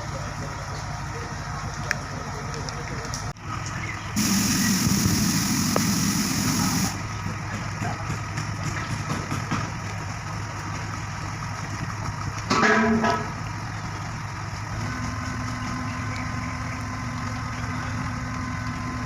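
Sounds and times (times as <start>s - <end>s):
heavy truck engine running: 0.0s - 19.0s
loud hiss: 4.2s - 7.0s.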